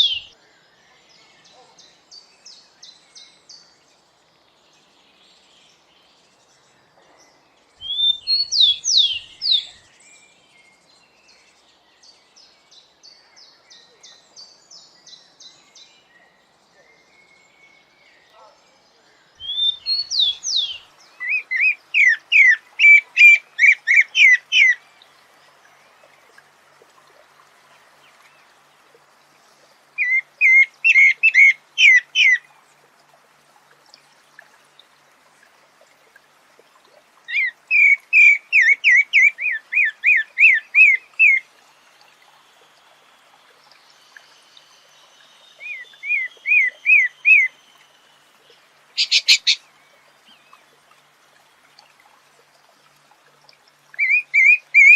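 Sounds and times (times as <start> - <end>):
thrush singing whistled notes: 45.4 - 48.1, 49.0 - 49.6, 54.0 - 54.9.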